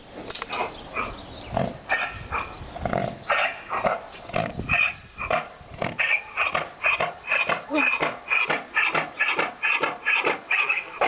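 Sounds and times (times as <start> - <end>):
horse coughing: 6.0 - 11.0.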